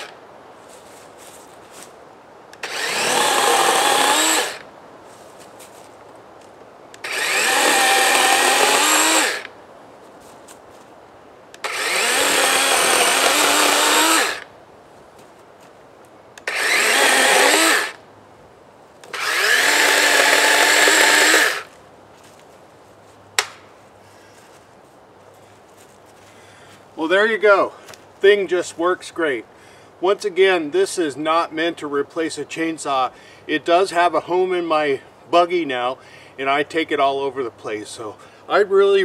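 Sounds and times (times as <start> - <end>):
chainsaw cutting tree limbs: 2.6 - 4.7, 7.0 - 9.6, 11.6 - 14.5, 16.4 - 18.0, 19.0 - 21.8.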